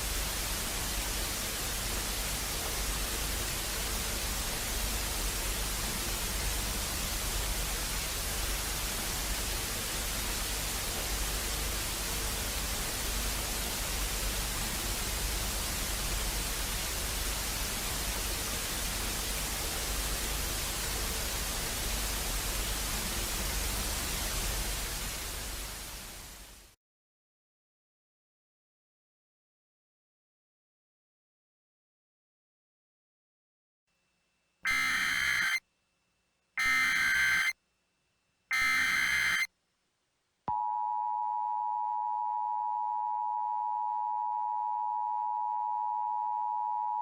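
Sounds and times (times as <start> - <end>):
static hiss: 0.0 - 26.8, 34.7 - 35.6, 36.6 - 37.5, 38.5 - 39.5.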